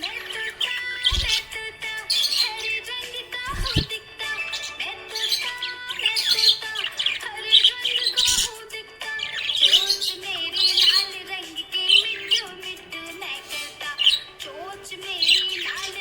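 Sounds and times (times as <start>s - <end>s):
budgie chirping and warbling: 0.0s - 12.6s
background music with held tones: 0.0s - 16.0s.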